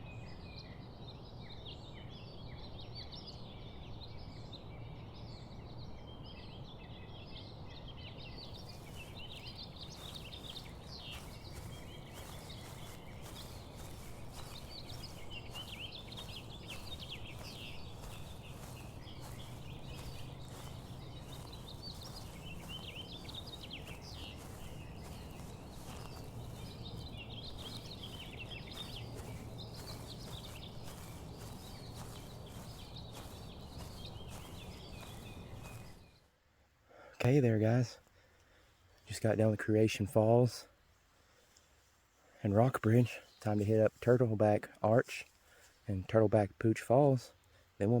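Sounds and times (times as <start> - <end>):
birds singing and chirping: 0.0 - 36.2.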